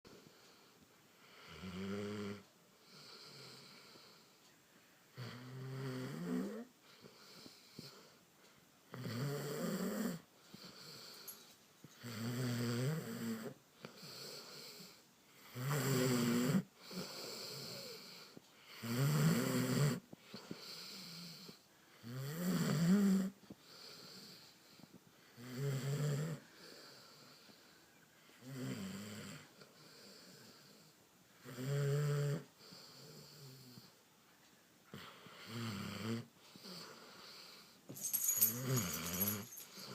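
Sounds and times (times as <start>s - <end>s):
pitched snores: 1.2s - 4.2s, 5.2s - 8.1s, 8.9s - 11.3s, 12.0s - 24.5s, 25.3s - 27.5s, 28.4s - 34.0s, 34.9s - 37.8s.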